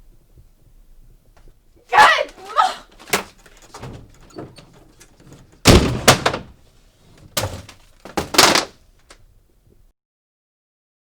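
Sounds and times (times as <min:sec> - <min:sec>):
heavy bang: 0:03.0 - 0:08.7
knocks and thuds with echo: 0:05.7 - 0:06.5.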